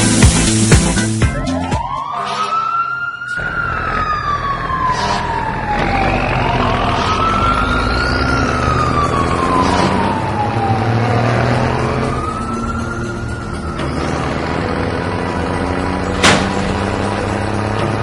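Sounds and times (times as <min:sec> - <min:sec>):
wailing siren: 0:01.6 - 0:18.0.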